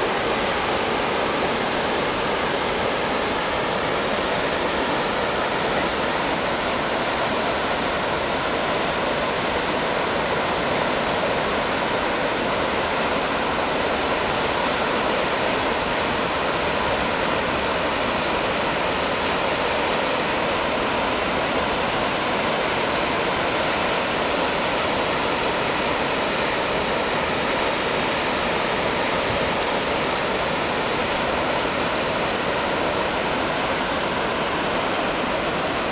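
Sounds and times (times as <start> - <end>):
waterfall rushing: 0.0 - 35.9.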